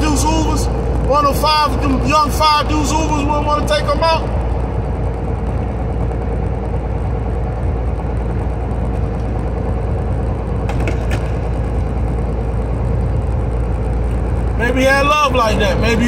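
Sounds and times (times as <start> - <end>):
mechanical rumble with hum: 0.0 - 16.0.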